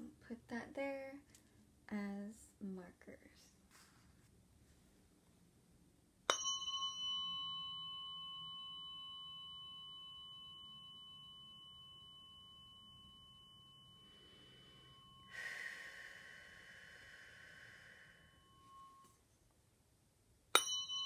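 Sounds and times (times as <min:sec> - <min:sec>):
tuning fork ringing: 0:06.3 - 0:19.4, 0:20.5 - 0:21.0.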